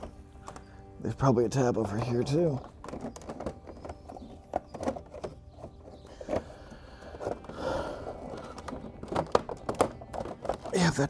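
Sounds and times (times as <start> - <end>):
hard plastic panels clicking: 0.0 - 11.0.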